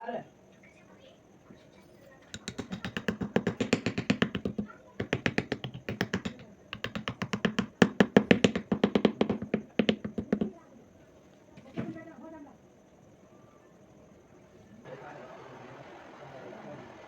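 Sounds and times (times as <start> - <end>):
fast even tapping strikes: 2.3 - 10.6.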